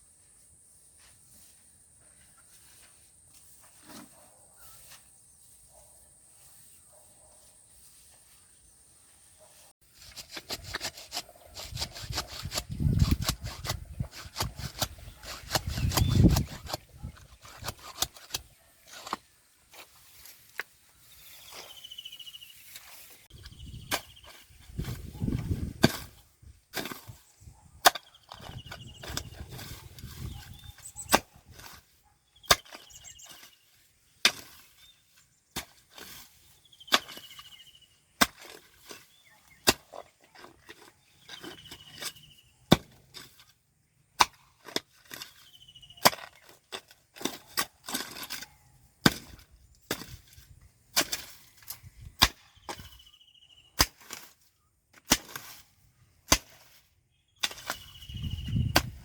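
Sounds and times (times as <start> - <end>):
hand tool chopping strikes: 42.7 - 43.0, 56.3 - 56.7.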